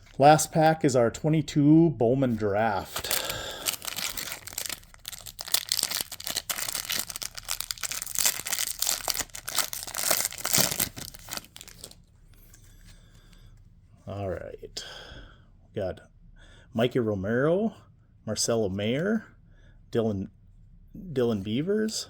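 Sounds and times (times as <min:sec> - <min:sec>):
foil pack tearing and crinkling: 0:02.9 - 0:12.0.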